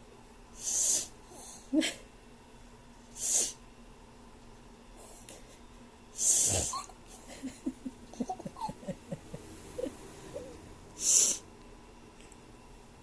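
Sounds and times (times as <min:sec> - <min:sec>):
child giggling: 0:06.8 - 0:10.6.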